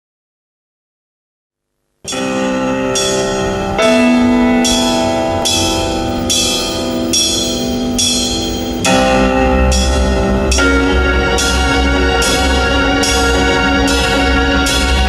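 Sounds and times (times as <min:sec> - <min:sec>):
sustained chords: 0:02.1 - 0:15.0
struck ringing note: 0:03.0 - 0:15.0.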